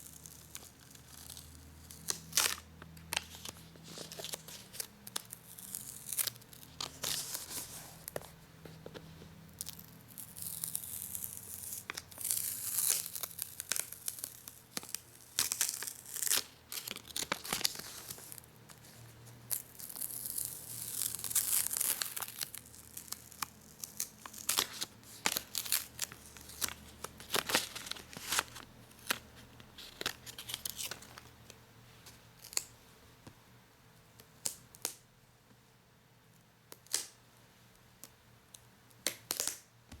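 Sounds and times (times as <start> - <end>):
crinkling: 0.0 - 32.7
sticky paper and plastic peeling: 19.5 - 31.6.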